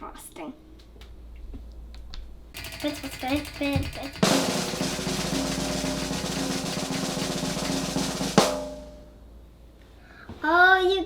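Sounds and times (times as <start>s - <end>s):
snare drum roll: 2.6s - 9.1s
sharp drum hit ringing: 2.6s - 9.2s.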